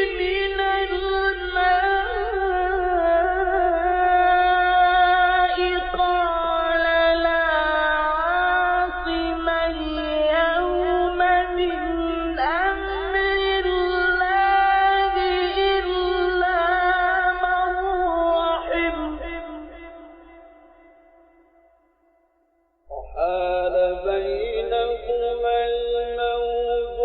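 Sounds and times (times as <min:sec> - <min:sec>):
man reciting melodically: 0:22.9 - 0:27.0.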